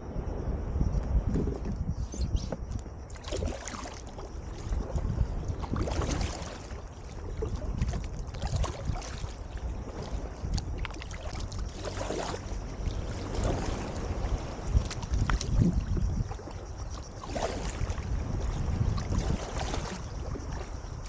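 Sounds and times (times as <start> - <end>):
wind buffeting microphone: 0.0 - 21.0
water lapping against hull: 1.2 - 21.0.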